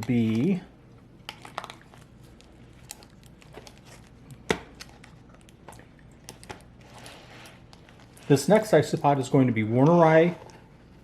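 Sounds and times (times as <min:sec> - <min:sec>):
packaging rustling and clicking: 0:01.3 - 0:09.0.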